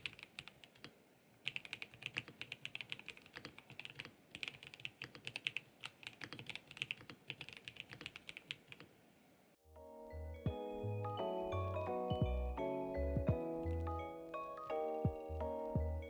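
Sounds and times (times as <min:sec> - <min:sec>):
mechanical keyboard typing: 0:00.0 - 0:08.9
background music with mallet notes: 0:09.7 - 0:16.0.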